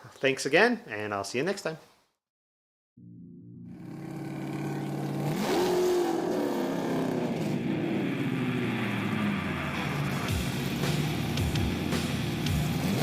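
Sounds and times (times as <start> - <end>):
car engine revving: 3.7 - 13.0.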